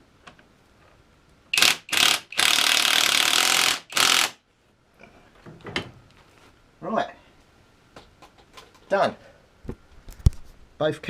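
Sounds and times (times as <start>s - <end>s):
power tool running: 1.6s - 4.4s.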